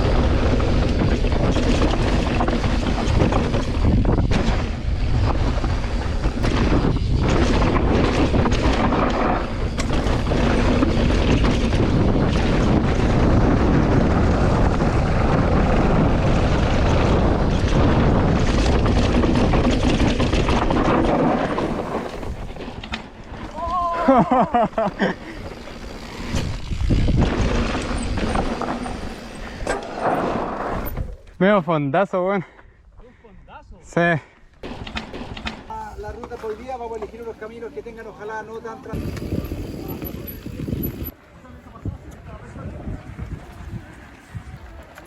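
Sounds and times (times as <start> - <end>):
bike knocks and rattles: 0.0 - 31.2, 34.6 - 37.4
wind rumbling on microphone: 0.0 - 31.3, 38.9 - 45.0.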